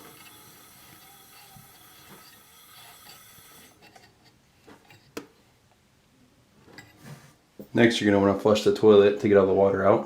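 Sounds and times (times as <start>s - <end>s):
water hissing through fill valve: 0.0s - 3.9s.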